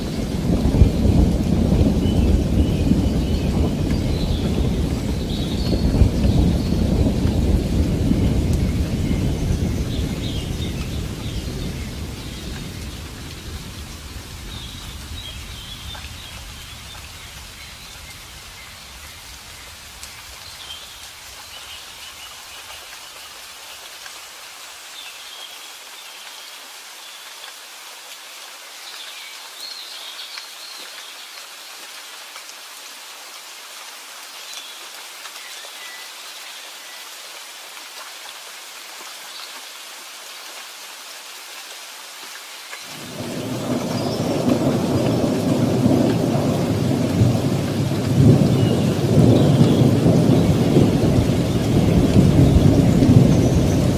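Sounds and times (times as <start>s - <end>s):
thunder rumbling: 0.0s - 20.0s, 43.0s - 53.9s
steady rain hiss: 0.0s - 53.9s.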